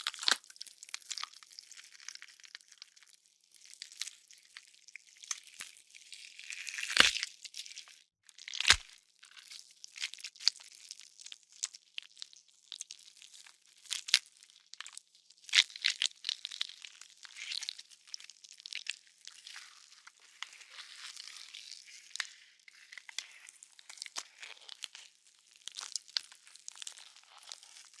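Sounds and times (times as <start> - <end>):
wet flesh tearing: 0.0 - 3.1, 3.7 - 7.8, 8.4 - 10.7, 13.9 - 28.0
sharp cracks and crunches: 6.7 - 7.3, 8.5 - 9.0.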